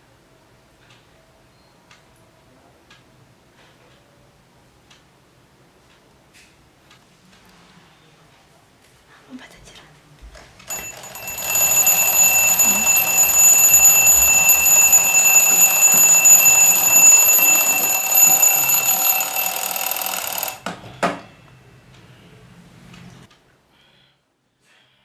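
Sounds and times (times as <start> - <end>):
alarm clock ringing: 10.7 - 20.8.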